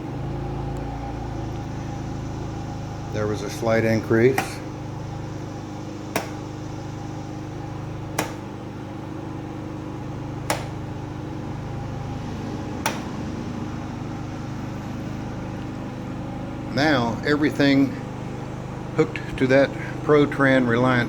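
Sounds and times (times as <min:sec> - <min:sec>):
generator running: 0:00.0 - 0:21.0
switch clicks: 0:06.2 - 0:06.6, 0:08.2 - 0:08.6, 0:10.5 - 0:11.0, 0:12.8 - 0:13.2.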